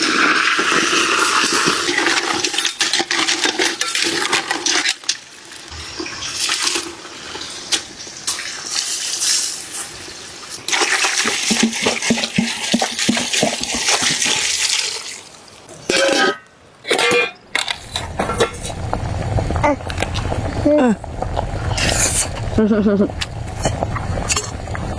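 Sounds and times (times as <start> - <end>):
water rushing and splashing: 17.7 - 24.9.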